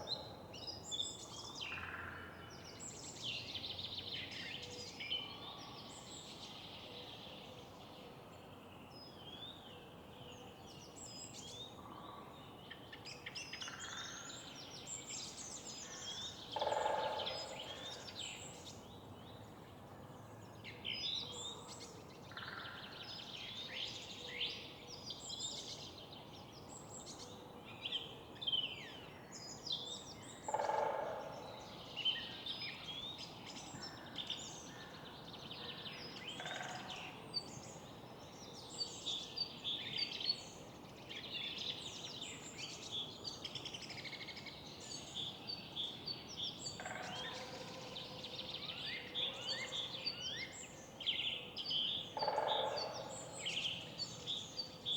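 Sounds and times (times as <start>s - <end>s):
low background noise: 0.0s - 54.9s
songbirds chirping and trilling: 0.0s - 54.9s.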